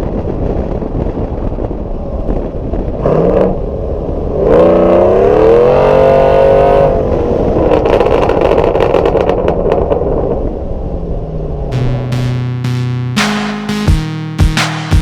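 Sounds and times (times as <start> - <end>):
engine revving: 4.4 - 7.0, 11.7 - 15.0
exhaust pops and crackles: 7.6 - 10.1.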